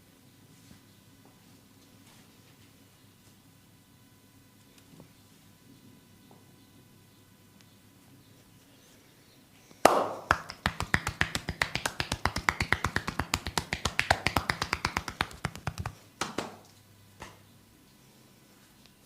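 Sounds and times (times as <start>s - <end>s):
rapid sharp claps: 9.8s - 16.6s
hands slapping body: 9.9s - 16.6s.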